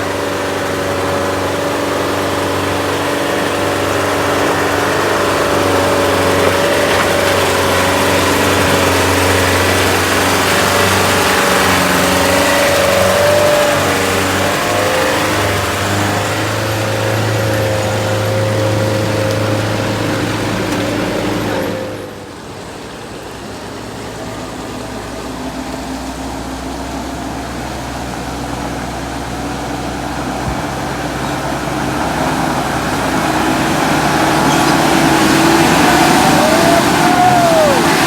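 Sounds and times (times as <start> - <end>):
vehicle engine humming: 0.0 - 38.0.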